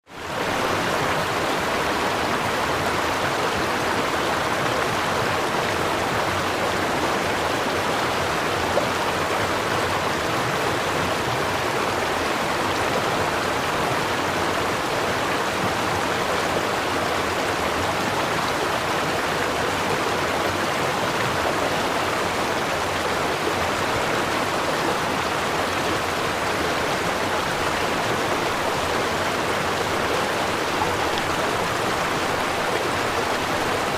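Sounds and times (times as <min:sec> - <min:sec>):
river water flowing: 0:00.0 - 0:33.9.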